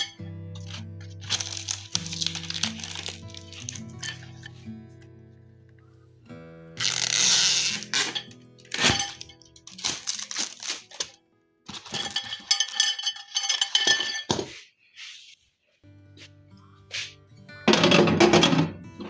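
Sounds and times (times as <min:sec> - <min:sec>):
glass and metal accessories clinking: 0:00.0 - 0:04.5, 0:06.8 - 0:11.1, 0:11.7 - 0:14.6
background music: 0:00.0 - 0:12.3, 0:15.9 - 0:19.0.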